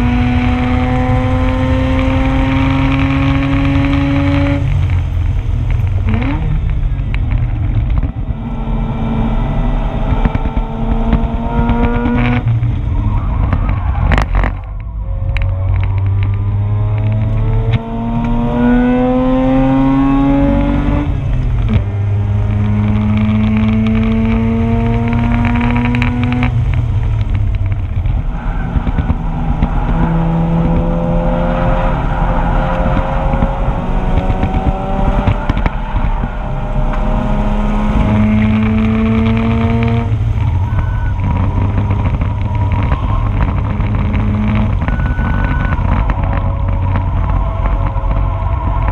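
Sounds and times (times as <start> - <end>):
rotary engine accelerating: 0.0 - 48.9.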